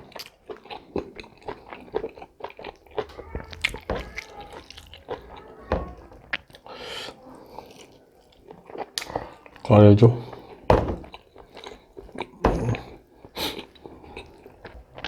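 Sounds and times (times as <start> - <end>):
wet chewing and mouth clicks: 0.0 - 15.0.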